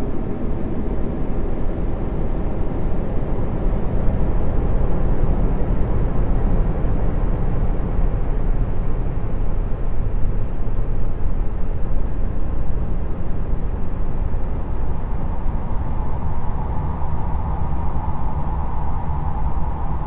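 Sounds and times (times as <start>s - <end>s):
faint hum: 7.5s - 20.0s
low rumbling drone: 13.5s - 20.0s.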